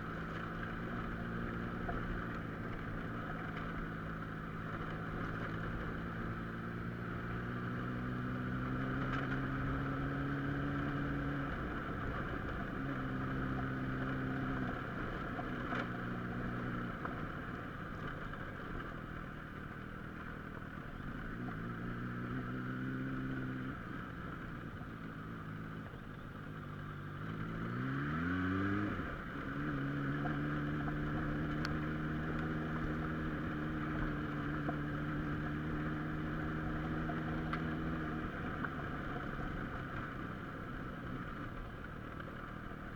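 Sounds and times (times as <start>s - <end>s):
car engine: 0.0s - 42.9s
road noise on dirt track: 0.0s - 42.9s.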